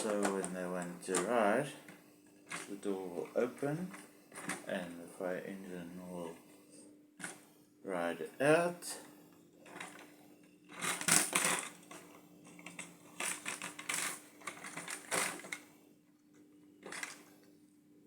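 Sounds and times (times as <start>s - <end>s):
plastic toy bricks clicking and rattling: 0.0s - 1.3s, 2.5s - 2.8s, 4.4s - 4.7s, 9.7s - 10.1s, 10.7s - 15.6s, 16.8s - 17.3s.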